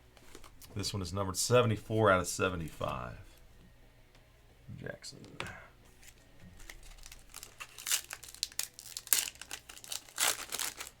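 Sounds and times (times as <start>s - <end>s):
foil wrapper tearing and crinkling: 6.6s - 11.0s.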